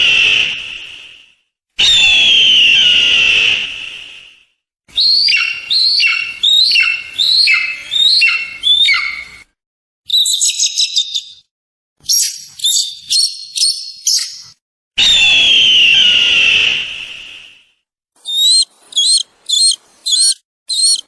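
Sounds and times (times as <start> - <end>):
eagle calling: 4.9 - 9.4, 18.2 - 21.0.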